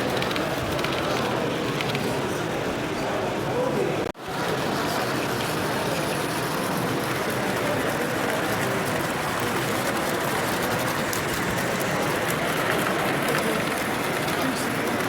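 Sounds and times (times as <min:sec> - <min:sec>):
crowd hubbub in a hall: 0:00.0 - 0:15.0.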